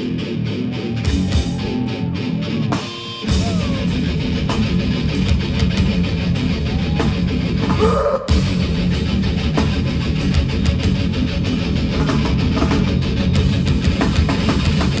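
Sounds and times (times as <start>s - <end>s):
hardcore band playing live: 0.0s - 15.0s.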